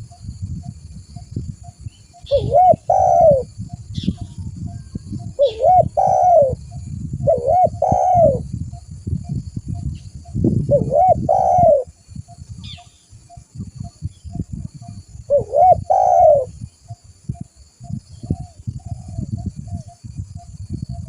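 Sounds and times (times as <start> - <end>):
low bumpy rumble: 0.0 - 21.0
dove cooing: 2.2 - 8.5, 10.7 - 12.0, 15.2 - 16.6, 18.2 - 20.0.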